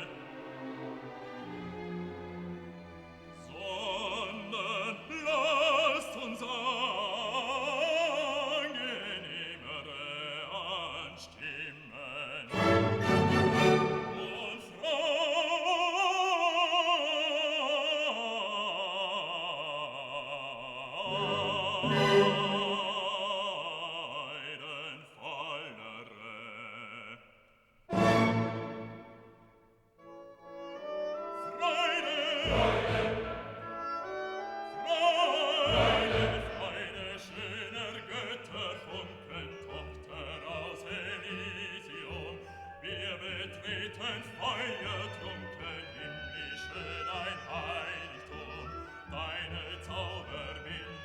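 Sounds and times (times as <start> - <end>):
operatic voice singing: 0.0 - 1.2, 3.3 - 29.2, 31.2 - 51.0
orchestral accompaniment: 0.0 - 6.2, 12.5 - 15.3, 21.0 - 23.5, 27.9 - 51.0.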